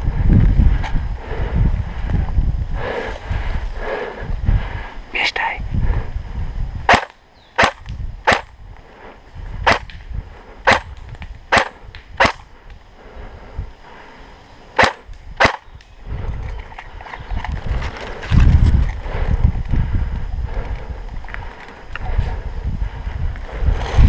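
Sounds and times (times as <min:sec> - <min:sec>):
airsoft rifle shots: 0:06.9 - 0:08.5, 0:09.6 - 0:09.9, 0:10.7 - 0:12.4, 0:14.8 - 0:15.7.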